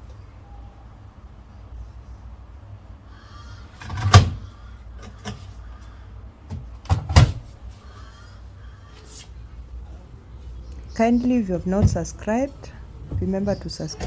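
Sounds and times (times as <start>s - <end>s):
loud knocks on washing machine: 6.5s - 7.4s
faint rustling: 7.4s - 14.0s.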